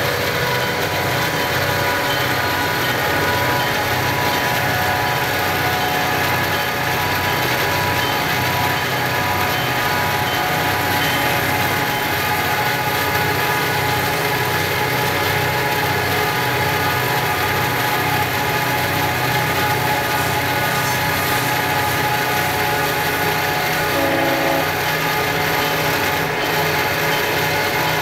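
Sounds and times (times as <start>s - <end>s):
diesel locomotive engines droning: 0.0s - 28.0s
brief extra tone: 24.0s - 24.8s.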